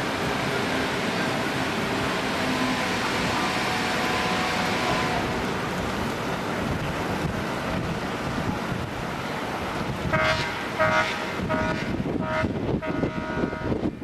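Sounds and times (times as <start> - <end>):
wind buffeting microphone: 0.0 - 14.0
boat horn toots: 2.5 - 5.4, 10.1 - 13.9.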